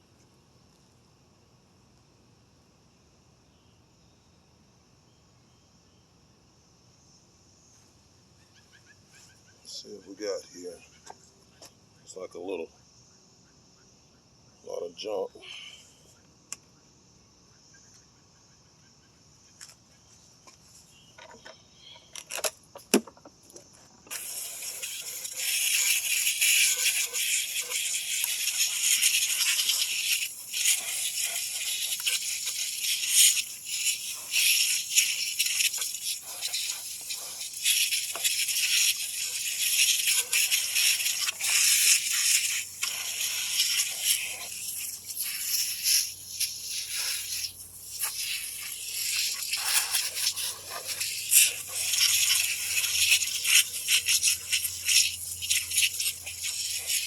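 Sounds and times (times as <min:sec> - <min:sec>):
loud high spray hiss: 0:24.1 - 0:57.0.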